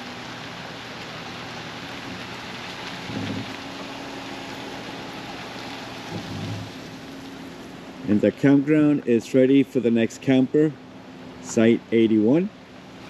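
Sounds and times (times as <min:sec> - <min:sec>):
constant hiss: 0:00.0 - 0:13.0
vehicle engine running: 0:00.6 - 0:08.4.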